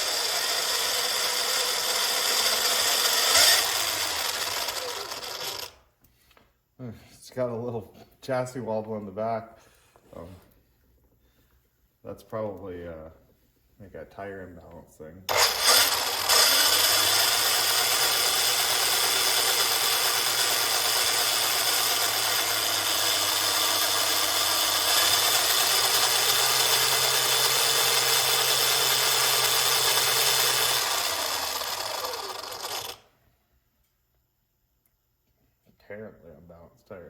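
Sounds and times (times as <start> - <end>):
rc truck electric motor running: 0.0 - 5.8, 15.3 - 33.1.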